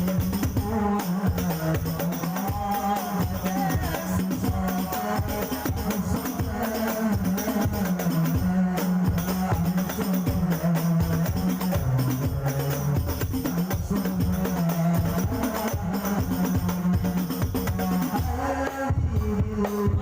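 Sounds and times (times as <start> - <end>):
frame drums and tambourine: 0.0 - 20.0.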